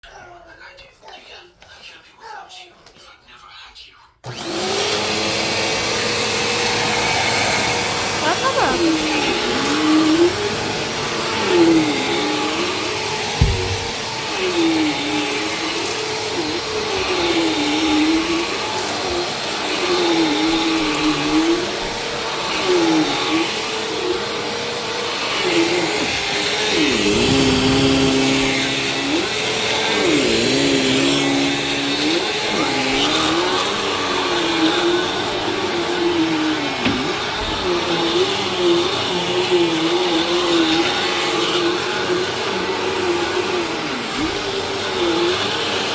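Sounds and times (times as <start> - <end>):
vacuum cleaner running: 4.2 - 45.9
short knock: 13.4 - 14.0.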